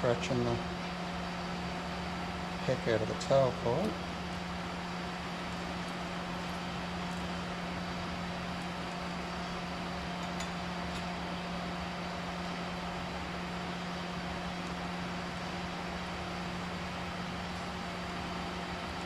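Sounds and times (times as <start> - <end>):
steady machine hum: 0.0 - 19.0.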